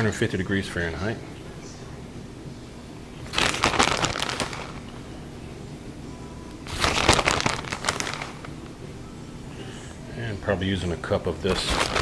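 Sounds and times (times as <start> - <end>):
plastic packaging crinkling: 3.2 - 5.0, 6.6 - 8.7, 11.4 - 12.0.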